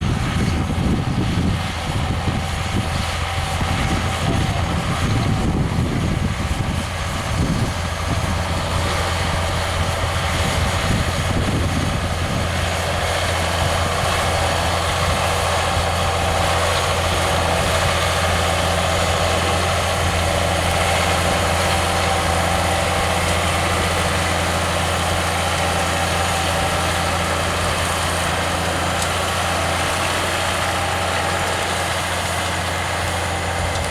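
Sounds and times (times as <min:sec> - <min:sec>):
tractor diesel engine under load: 0:00.0 - 0:33.9.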